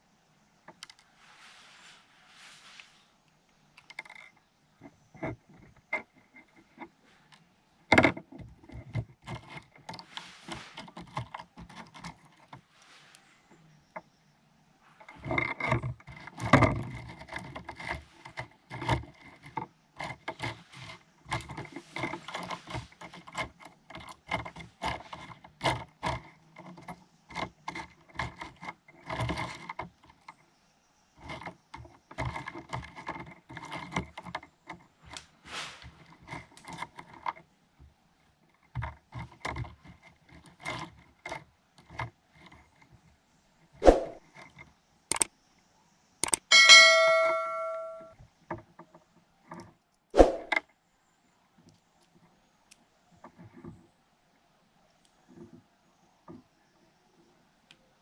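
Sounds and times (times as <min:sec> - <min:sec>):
hand tools clicking and scraping: 0:15.0 - 0:30.3, 0:46.2 - 0:48.1.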